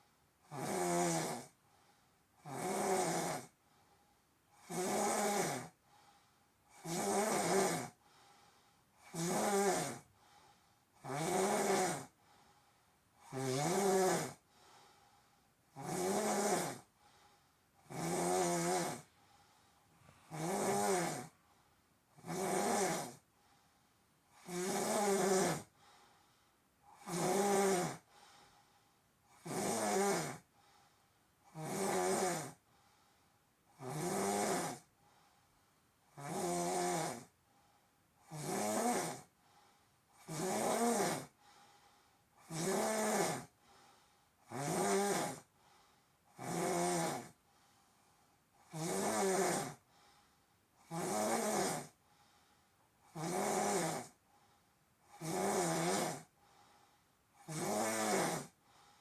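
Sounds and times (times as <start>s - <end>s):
quiet breaths: 0.0s - 0.4s, 1.4s - 2.6s, 3.2s - 4.6s, 5.4s - 6.8s, 7.6s - 15.9s, 16.5s - 27.0s, 27.6s - 29.4s, 30.1s - 31.6s, 32.4s - 33.8s, 34.6s - 36.6s, 37.2s - 38.2s, 38.8s - 42.5s, 43.2s - 50.9s, 51.6s - 59.0s
person snoring: 0.5s - 1.6s, 2.4s - 3.5s, 4.6s - 5.8s, 6.7s - 8.0s, 9.0s - 10.1s, 11.0s - 12.2s, 13.2s - 14.4s, 15.7s - 16.9s, 17.8s - 19.2s, 20.0s - 21.4s, 22.2s - 23.2s, 24.3s - 25.8s, 26.9s - 28.1s, 29.3s - 30.4s, 31.5s - 32.6s, 33.8s - 34.9s, 36.2s - 37.3s, 38.2s - 39.3s, 40.2s - 41.4s, 42.4s - 43.5s, 44.4s - 45.5s, 46.4s - 47.4s, 48.6s - 49.8s, 50.8s - 52.0s, 53.1s - 54.2s, 55.1s - 56.3s, 57.4s - 58.6s.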